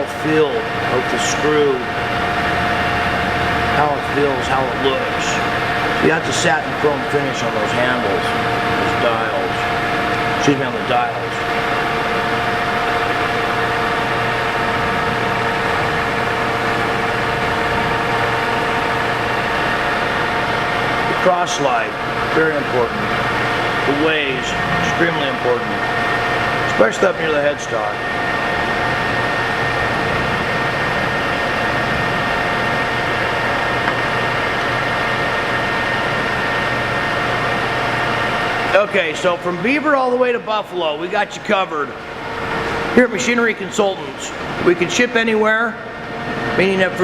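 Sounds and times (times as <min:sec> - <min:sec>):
lathe humming: 0:00.0 - 0:47.0.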